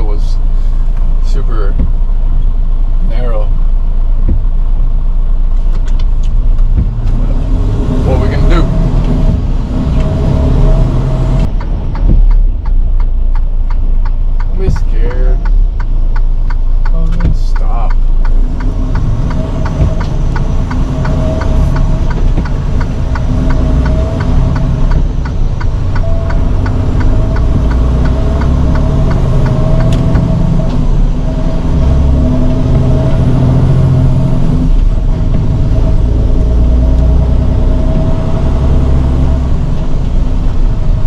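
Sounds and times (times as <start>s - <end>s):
diesel engine rumbling: 0.0s - 41.0s
rapid even ticking: 7.9s - 33.8s.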